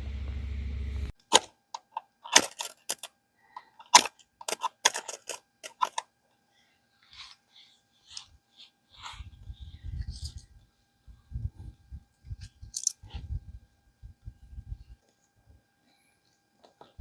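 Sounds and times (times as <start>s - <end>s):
low hum: 0.0s - 1.2s.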